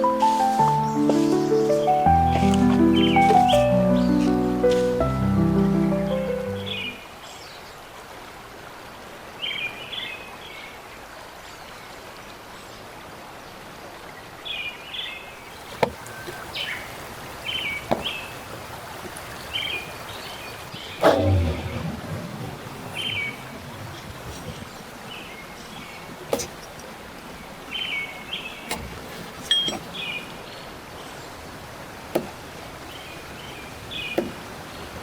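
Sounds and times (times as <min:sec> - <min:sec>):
birds chirping: 0:00.0 - 0:07.0, 0:15.3 - 0:35.0
flowing river water: 0:00.0 - 0:35.0
thump: 0:26.3 - 0:26.6.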